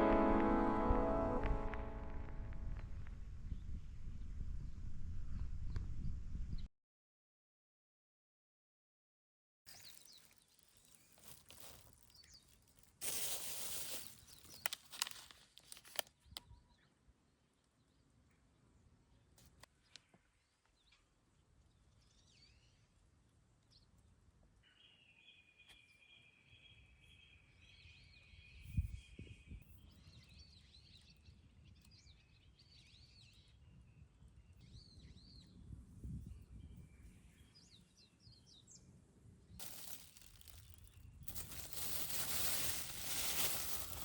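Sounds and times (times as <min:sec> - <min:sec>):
faint birds chirping: 0:39.6 - 0:44.0.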